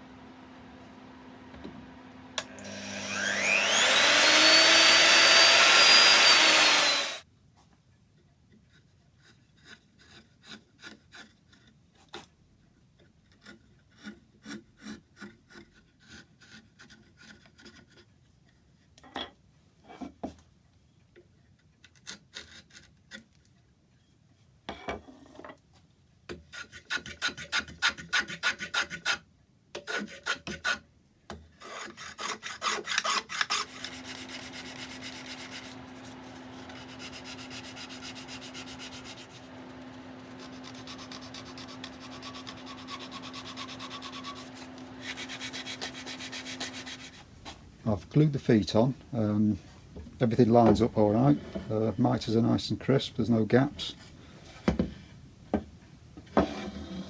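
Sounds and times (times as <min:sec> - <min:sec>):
power tool spinning: 0:00.6 - 0:07.2, 0:33.4 - 0:57.0
hand tool rasping wood: 0:02.5 - 0:07.2, 0:09.2 - 0:11.7, 0:29.8 - 0:30.8, 0:31.6 - 0:57.0.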